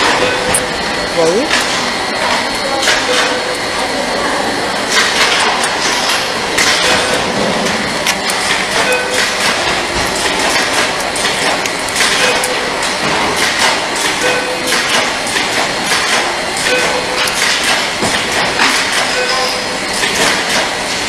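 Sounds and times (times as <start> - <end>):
soldering machine clattering: 4.9 - 19.4.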